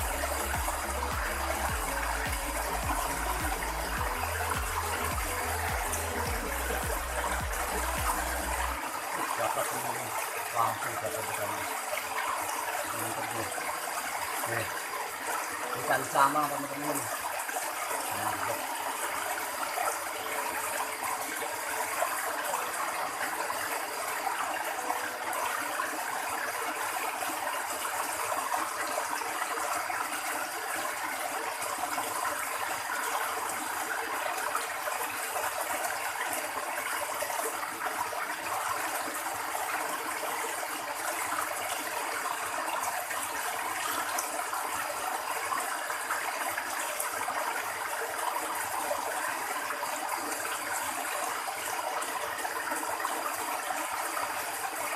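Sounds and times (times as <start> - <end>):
water trickling in a stream: 0.0 - 54.9.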